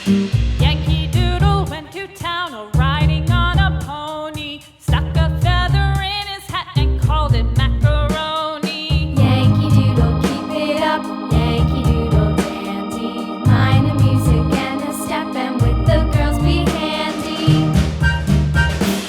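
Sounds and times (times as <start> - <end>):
pop music with singing: 8.1 - 18.0.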